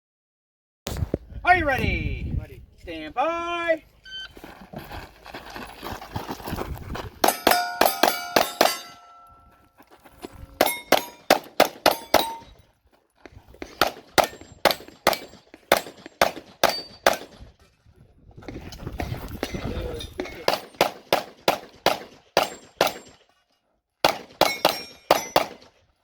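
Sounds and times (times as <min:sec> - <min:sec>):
steel plate ringing: 0:07.2 - 0:09.6, 0:10.5 - 0:12.6
rapid pistol shots: 0:10.6 - 0:12.4, 0:13.7 - 0:17.4, 0:20.4 - 0:23.2, 0:24.0 - 0:25.8.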